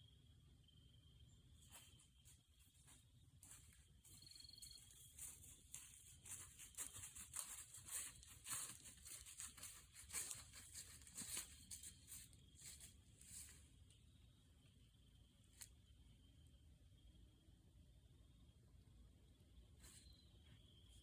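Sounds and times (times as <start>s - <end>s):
faint rustling and crackling: 1.6s - 14.0s.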